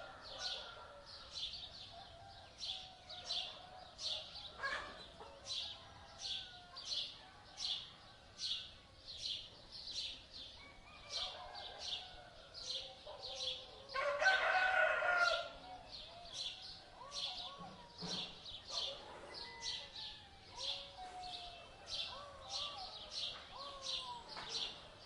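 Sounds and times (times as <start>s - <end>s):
rooster crowing: 10.6s - 12.5s, 14.0s - 15.6s, 19.2s - 21.8s.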